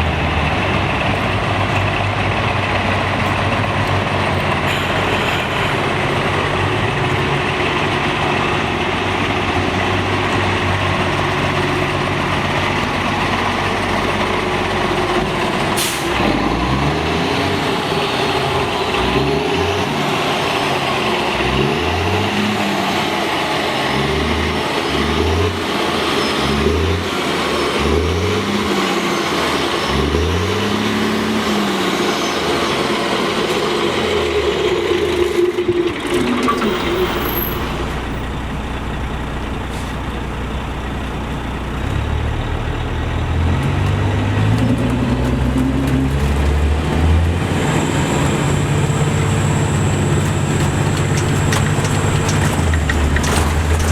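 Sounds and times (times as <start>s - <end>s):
diesel coach engine: 0.0s - 53.9s
air brake hiss: 15.8s - 16.2s, 39.7s - 40.0s.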